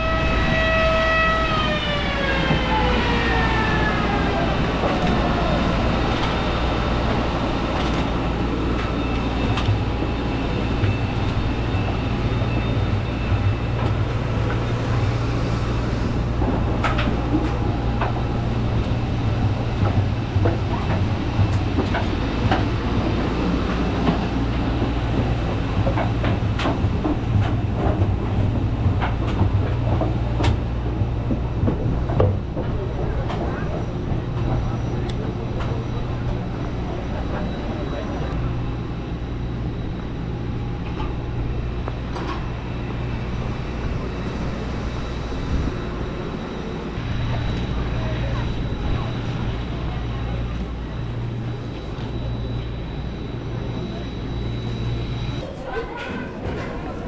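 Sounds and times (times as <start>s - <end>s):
machine whine winding down: 50.8s - 55.4s.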